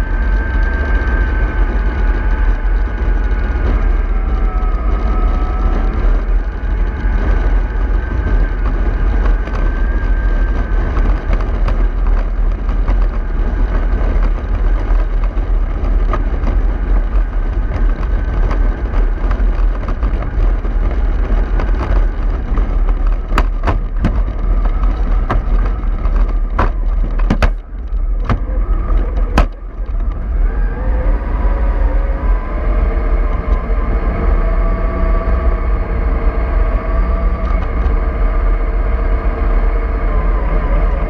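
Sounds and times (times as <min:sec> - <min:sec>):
bus engine rumble: 0:00.0 - 0:41.0
drivetrain whine: 0:00.0 - 0:41.0
sharp knocks and rattles: 0:08.1 - 0:30.1.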